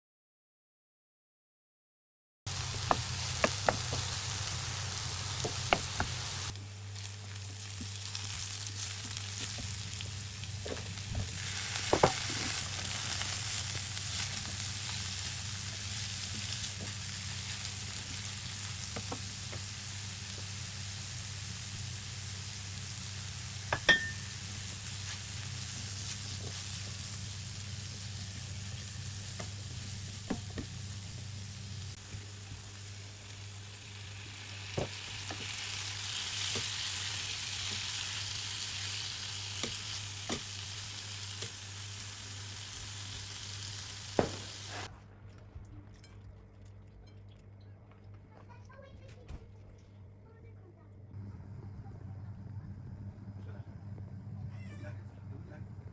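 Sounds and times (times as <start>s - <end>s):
vegetables sizzling in a pan: 2.5s - 44.9s.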